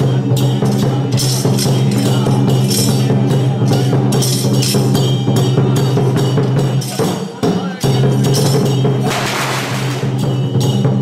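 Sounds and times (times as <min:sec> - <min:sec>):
drum gongs and cymbals beating: 0:00.0 - 0:11.0
cymbal crashes: 0:08.4 - 0:10.8.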